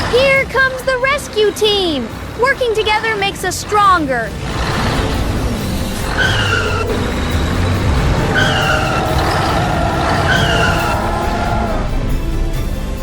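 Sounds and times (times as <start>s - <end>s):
vehicle engines running: 0.0s - 13.0s
short falling squeals: 6.0s - 11.9s.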